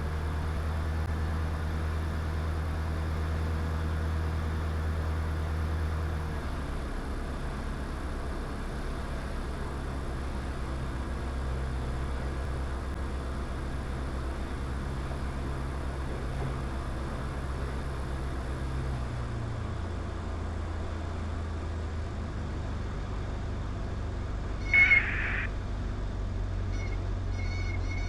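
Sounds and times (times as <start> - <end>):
airflow noise: 24.6 - 25.6.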